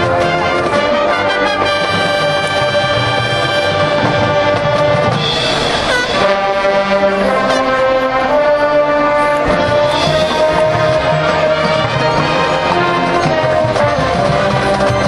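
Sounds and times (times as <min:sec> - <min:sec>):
brass chords: 0:00.0 - 0:15.0
drums and percussion: 0:00.0 - 0:15.0.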